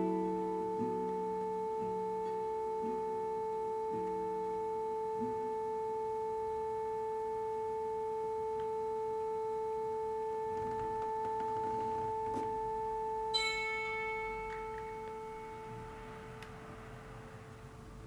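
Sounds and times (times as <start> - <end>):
bright plucked note: 0.0 - 3.1, 13.2 - 17.2
ambient drone tones: 0.0 - 18.0.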